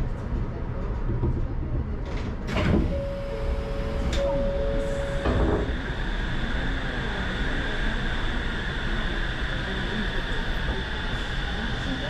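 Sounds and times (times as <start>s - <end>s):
monorail car rumbling: 0.0s - 12.0s
held mid tone: 2.9s - 5.3s
higher steady whine: 2.9s - 12.0s.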